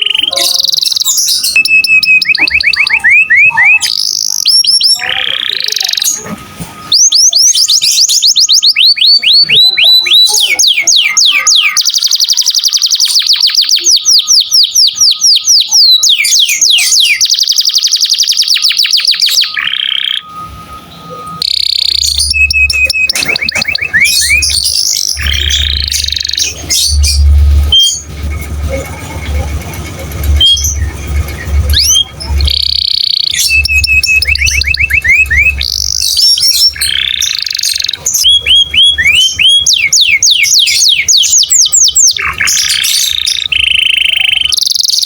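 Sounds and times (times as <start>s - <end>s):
canary singing: 0.0s - 45.0s
low rumble: 24.1s - 36.9s.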